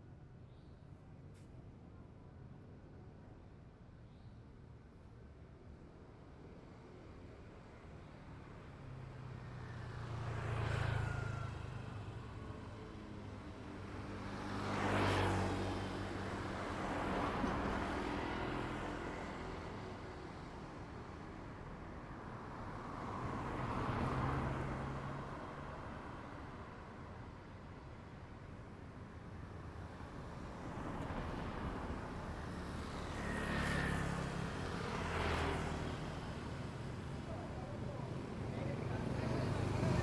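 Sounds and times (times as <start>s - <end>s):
high whine of passing vehicle: 29.0s - 40.0s
vehicles passing: 30.0s - 40.0s.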